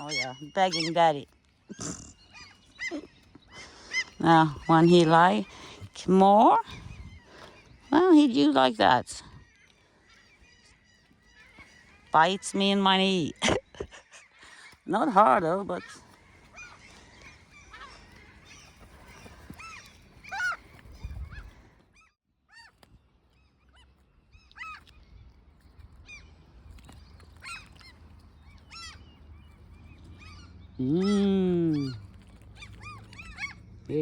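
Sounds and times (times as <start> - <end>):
songbirds chirping and singing: 0.0 - 34.0.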